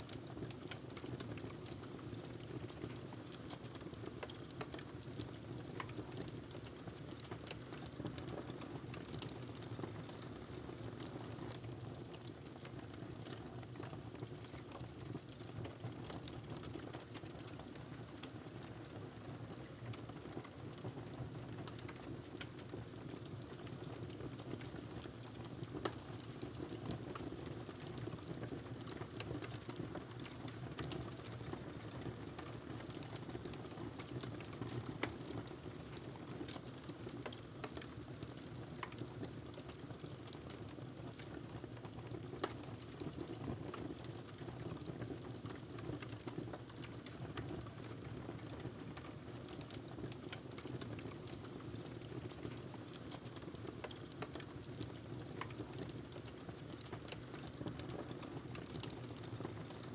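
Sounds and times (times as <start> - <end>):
wood fire crackling: 21.6 - 41.4, 43.8 - 59.9.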